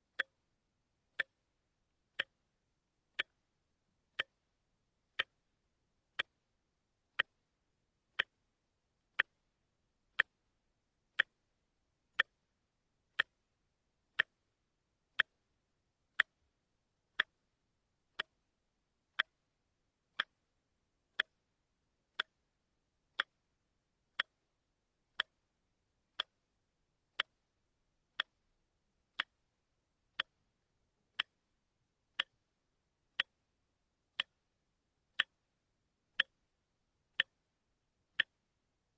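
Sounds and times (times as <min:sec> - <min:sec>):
mechanical clock ticking: 0:00.1 - 0:00.3, 0:01.1 - 0:01.4, 0:02.1 - 0:02.4, 0:03.1 - 0:03.4, 0:04.1 - 0:04.4, 0:05.1 - 0:05.4, 0:06.1 - 0:06.4, 0:07.1 - 0:07.4, 0:08.1 - 0:08.4, 0:09.2 - 0:09.5, 0:10.1 - 0:10.4, 0:11.1 - 0:11.4, 0:12.2 - 0:12.4, 0:13.1 - 0:13.4, 0:14.1 - 0:14.4, 0:15.2 - 0:15.4, 0:16.1 - 0:16.4, 0:17.1 - 0:17.4, 0:18.1 - 0:18.3, 0:19.1 - 0:19.4, 0:20.1 - 0:20.5, 0:21.1 - 0:21.4, 0:22.1 - 0:22.4, 0:23.1 - 0:23.4, 0:24.1 - 0:24.5, 0:25.1 - 0:25.4, 0:26.1 - 0:26.4, 0:27.1 - 0:27.5, 0:28.1 - 0:28.5, 0:29.1 - 0:29.5, 0:30.1 - 0:30.4, 0:31.1 - 0:31.5, 0:32.1 - 0:32.5, 0:33.1 - 0:33.4, 0:34.1 - 0:34.4, 0:35.1 - 0:35.4, 0:36.1 - 0:36.4, 0:37.1 - 0:37.4, 0:38.1 - 0:38.4.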